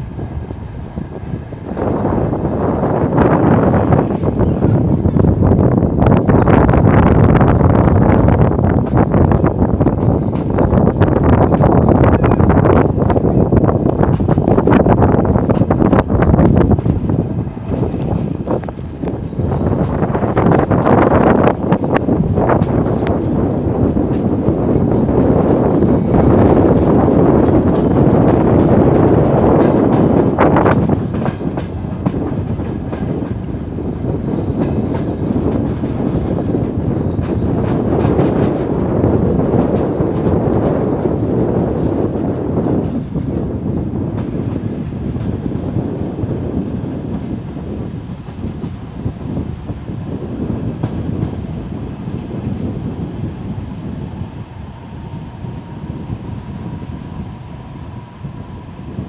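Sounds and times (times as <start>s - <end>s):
train wheels rumbling on rails: 0.0s - 59.0s
wheel or brake squeal: 53.5s - 54.9s.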